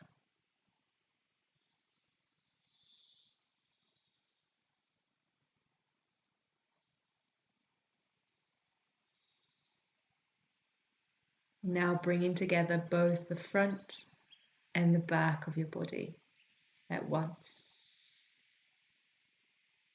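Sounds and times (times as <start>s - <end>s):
high rapid bird chirps: 12.2s - 14.4s.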